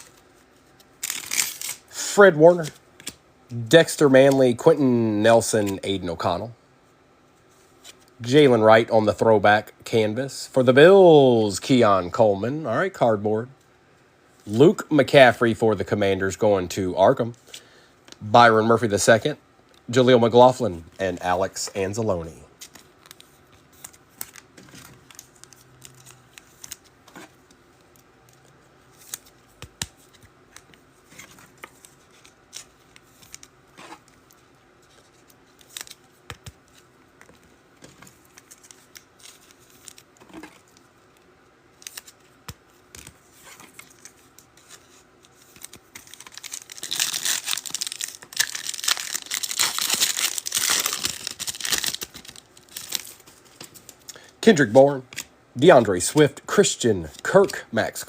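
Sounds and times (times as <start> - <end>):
wrapper crinkling and tearing: 1.0 - 1.8, 45.5 - 54.2.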